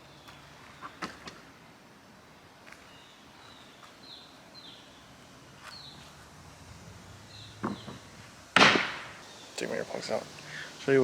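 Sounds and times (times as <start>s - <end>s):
bird chirping: 2.7s - 6.1s, 7.1s - 8.1s, 9.2s - 10.8s.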